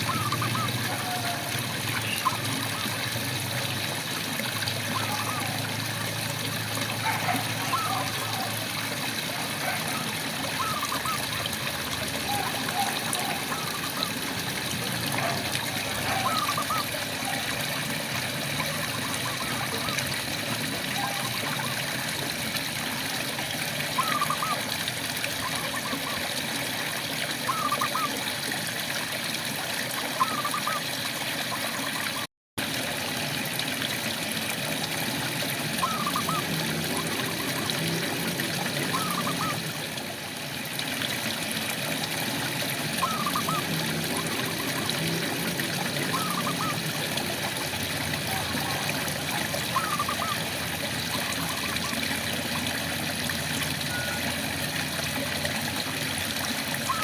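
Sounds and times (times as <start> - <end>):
frog calling: 0.0 - 3.0, 4.9 - 5.6, 7.0 - 8.6, 10.6 - 11.5, 16.0 - 17.5, 23.9 - 24.7, 27.5 - 28.2, 30.2 - 30.9, 35.8 - 38.0, 38.8 - 39.7, 43.0 - 45.2, 45.8 - 47.0, 48.3 - 52.2, 53.9 - 54.4.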